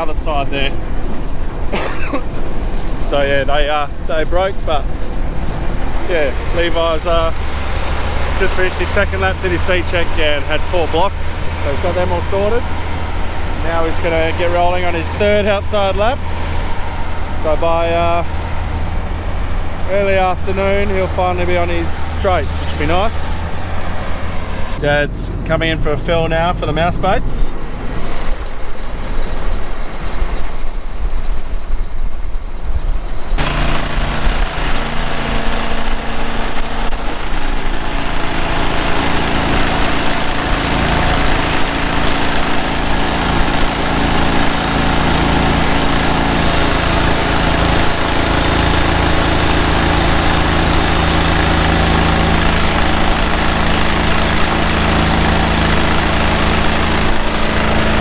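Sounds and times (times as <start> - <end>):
farm machinery engine idling: 0.0 - 31.0, 32.6 - 58.0
low rumble: 0.0 - 44.5.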